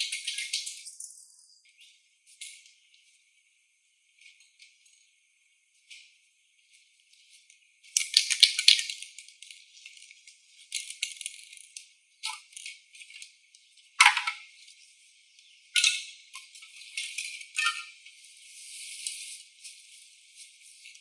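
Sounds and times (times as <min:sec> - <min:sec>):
small hard objects clattering: 0:08.0 - 0:13.3, 0:14.0 - 0:14.5.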